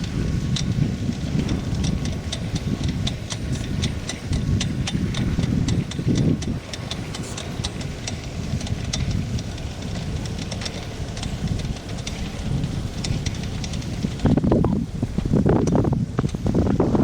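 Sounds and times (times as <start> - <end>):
light irregular ticks: 0.0 - 17.0
wind noise on microphone: 0.0 - 17.0.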